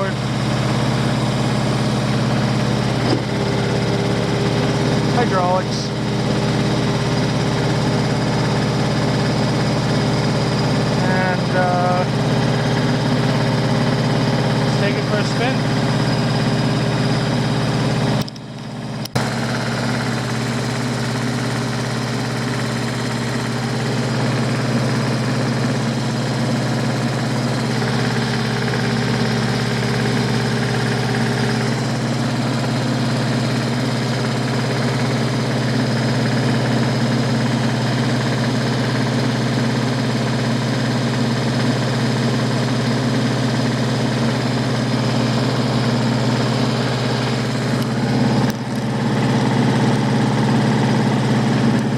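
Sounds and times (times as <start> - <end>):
tractor engine running: 0.0 - 51.9
click: 18.2 - 19.2.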